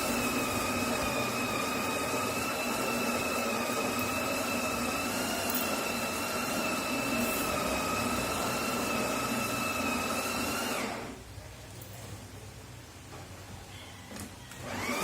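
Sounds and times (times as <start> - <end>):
espresso machine motor whining: 0.0 - 11.1, 14.6 - 15.0.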